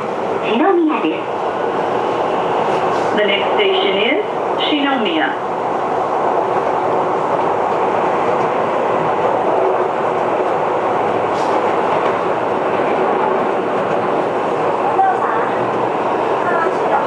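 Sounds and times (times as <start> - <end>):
train wheels rumbling on rails: 0.0 - 17.0.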